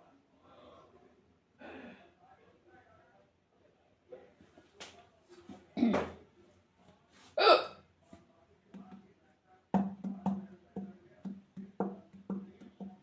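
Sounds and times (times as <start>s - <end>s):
woman hiccuping: 7.4s - 7.8s.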